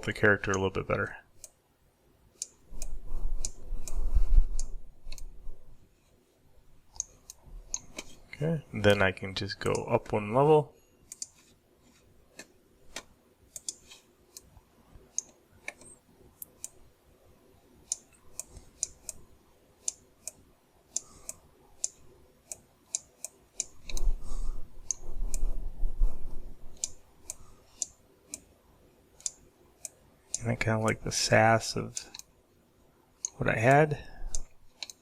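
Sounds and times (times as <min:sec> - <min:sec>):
mouse and keyboard clicks: 0:02.4 - 0:05.3, 0:12.3 - 0:14.5, 0:17.8 - 0:19.2, 0:19.8 - 0:24.1.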